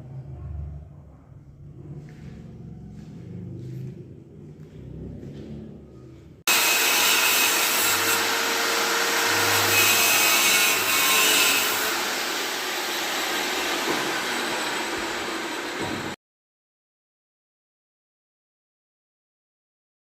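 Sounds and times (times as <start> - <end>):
power tool whirring: 6.5 - 16.2.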